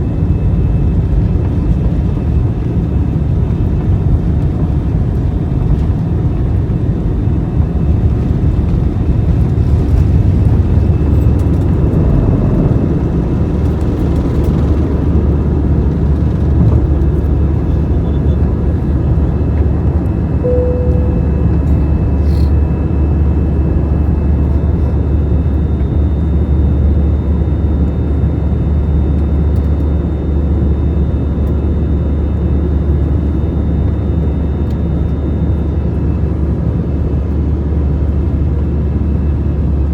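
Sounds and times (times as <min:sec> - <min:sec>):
jet engines rumbling: 0:00.0 - 0:27.3
faint steady tones: 0:20.4 - 0:22.2
brief tone: 0:20.4 - 0:24.6.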